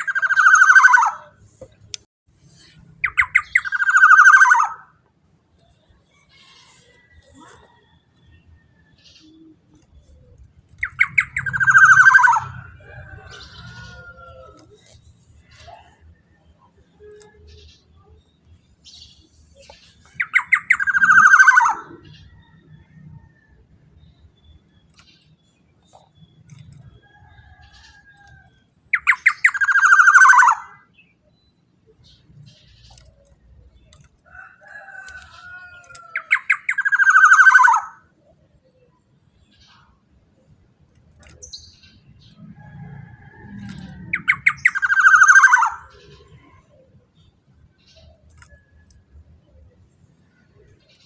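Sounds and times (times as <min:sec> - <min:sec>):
bird calling: 0:00.0 - 0:01.8, 0:02.6 - 0:05.0, 0:09.0 - 0:16.1, 0:18.9 - 0:22.5, 0:27.4 - 0:30.9, 0:43.6 - 0:46.8.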